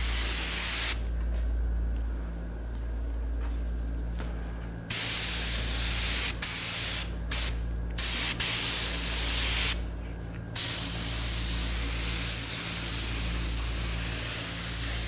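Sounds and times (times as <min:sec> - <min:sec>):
spray gun hissing bursts: 0:00.0 - 0:01.0, 0:04.9 - 0:09.8, 0:10.6 - 0:15.0
steady low hum: 0:00.0 - 0:15.0.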